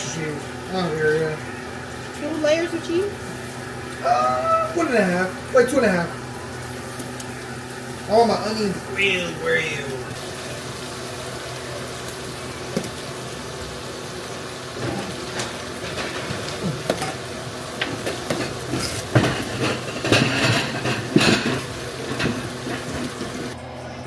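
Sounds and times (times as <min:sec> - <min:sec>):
food frying in a pan: 0:00.0 - 0:23.6
utensil scraping a pan: 0:17.8 - 0:23.6.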